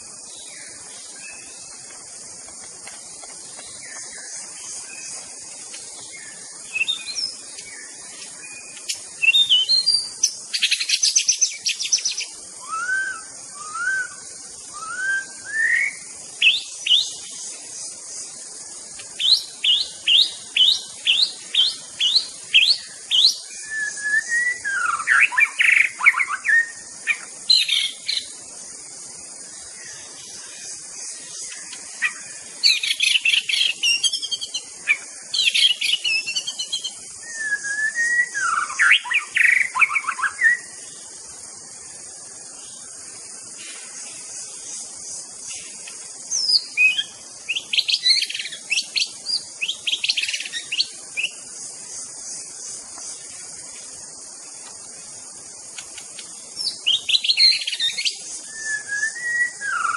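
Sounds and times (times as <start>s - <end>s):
bird singing whistled phrases: 8.5s - 17.1s, 19.2s - 26.8s, 35.4s - 40.7s, 56.6s - 59.9s.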